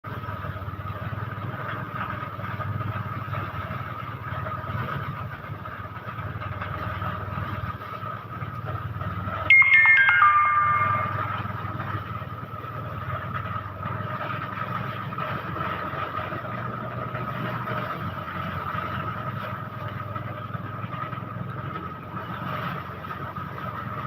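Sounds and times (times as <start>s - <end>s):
high ringing tones: 9.5s - 11.9s.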